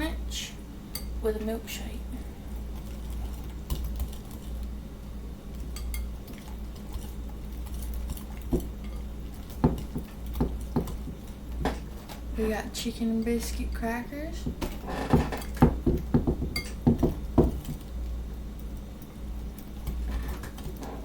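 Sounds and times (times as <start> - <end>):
steady low hum: 0.0 - 21.0
utensils clinking against dishes: 16.6 - 16.9.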